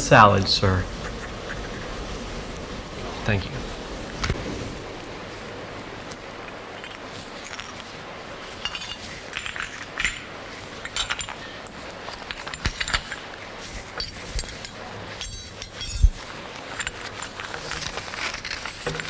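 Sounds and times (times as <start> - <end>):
tableware clinking: 8.6 - 11.7.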